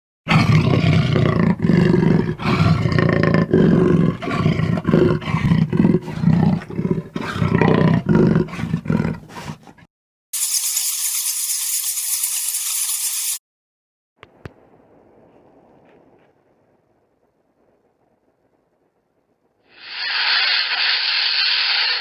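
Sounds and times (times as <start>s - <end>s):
large animal roaring: 0.3s - 9.9s.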